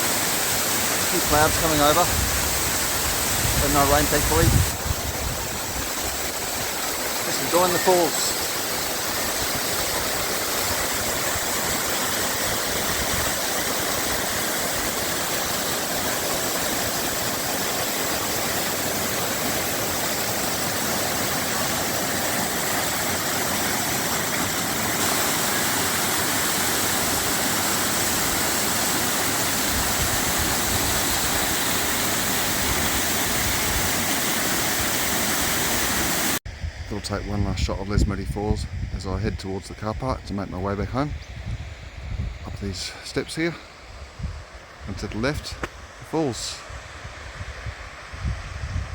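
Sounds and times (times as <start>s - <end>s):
waterfall rushing: 0.0s - 36.4s.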